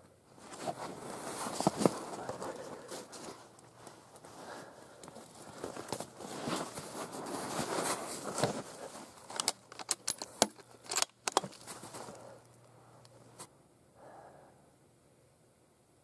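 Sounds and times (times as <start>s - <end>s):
clothing rustling: 0.3s - 9.8s, 11.4s - 12.4s
rifle bolt clicking: 9.4s - 11.5s.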